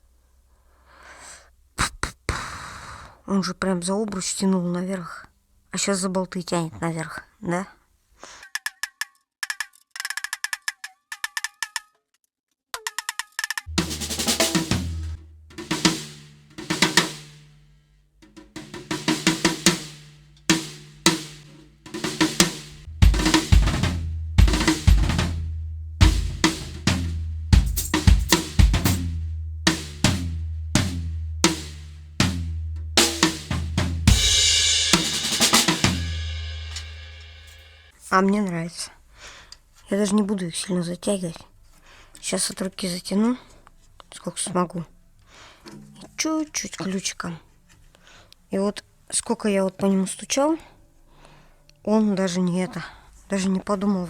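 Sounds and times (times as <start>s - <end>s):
drum kit groove: 13.7s - 37.9s
crash cymbal ringing: 34.2s - 37.9s.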